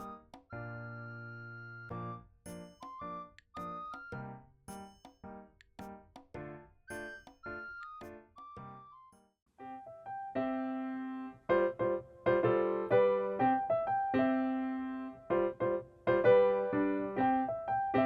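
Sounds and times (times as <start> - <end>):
piano melody with chords: 0.0 - 9.0, 9.6 - 18.0.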